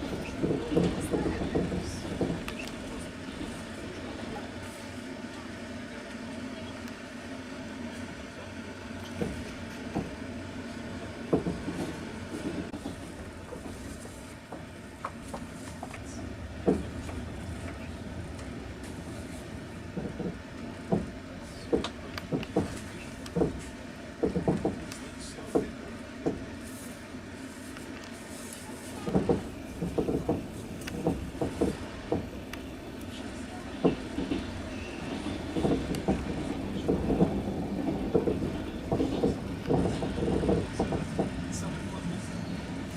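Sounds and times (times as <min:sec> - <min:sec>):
train wheels clacking over rail joints: 0:00.0 - 0:03.6, 0:09.0 - 0:10.2, 0:11.2 - 0:26.5, 0:28.9 - 0:42.9
train carriage rumble: 0:00.0 - 0:42.9.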